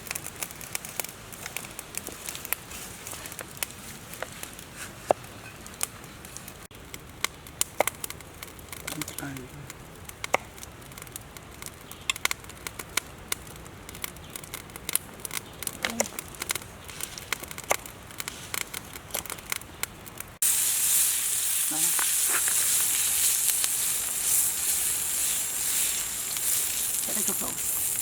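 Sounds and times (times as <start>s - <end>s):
fire crackling and popping: 0.0s - 28.0s
food sizzling in a pan: 20.4s - 28.0s.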